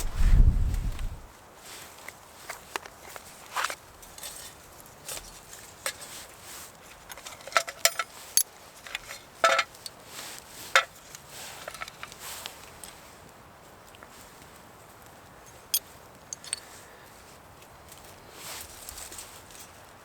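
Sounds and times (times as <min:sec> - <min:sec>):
metal camp gear clinking: 0:04.0 - 0:06.2, 0:06.8 - 0:10.0, 0:10.8 - 0:13.1, 0:15.4 - 0:16.8.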